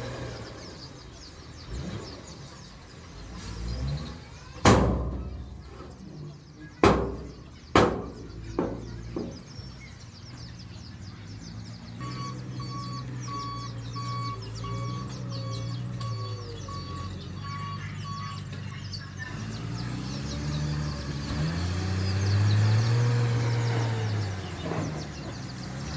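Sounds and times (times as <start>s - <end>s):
engine running: 0.0s - 25.9s
heavy thumps: 4.6s - 6.2s, 6.8s - 9.7s
reversing alarm beeping: 12.0s - 18.7s.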